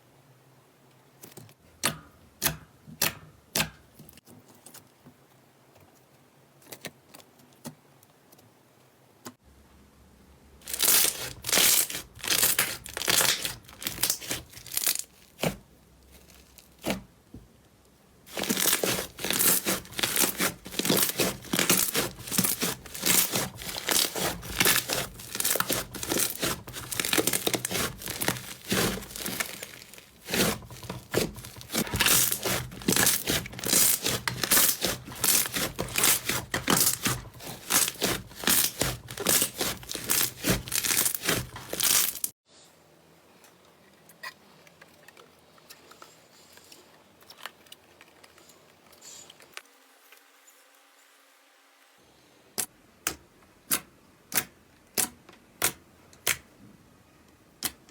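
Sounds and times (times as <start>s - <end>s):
slime squeezed crackling and popping: 10.6s - 15.5s, 18.3s - 42.3s.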